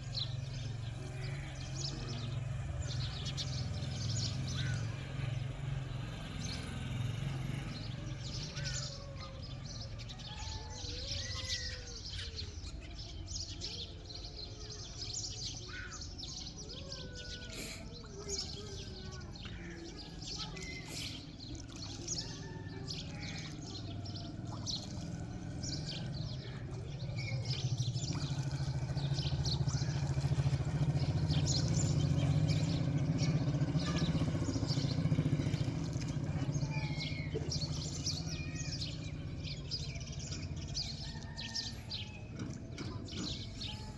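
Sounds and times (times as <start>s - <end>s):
many birds chirping: 0.0s - 43.9s.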